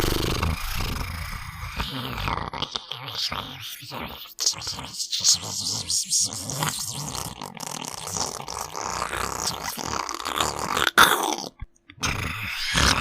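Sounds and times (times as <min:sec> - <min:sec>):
sharp burst: 0:00.0 - 0:01.7
distorted gurgling and rasping: 0:00.0 - 0:02.0.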